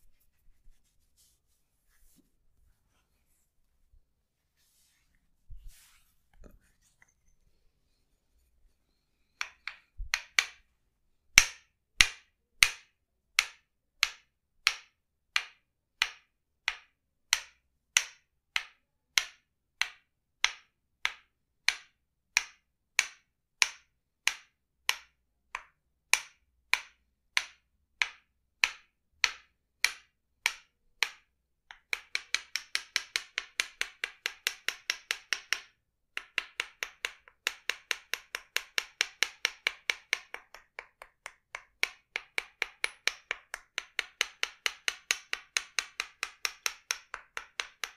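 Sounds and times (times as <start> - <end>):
wooden mallet striking wooden wedge: 9.4 - 10.6, 11.4 - 47.9.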